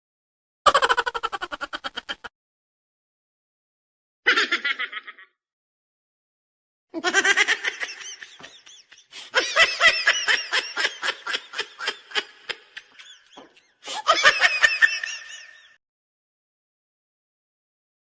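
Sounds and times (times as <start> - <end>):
high-pitched laughing: 0.7 - 2.3, 4.3 - 5.3, 7.0 - 15.8.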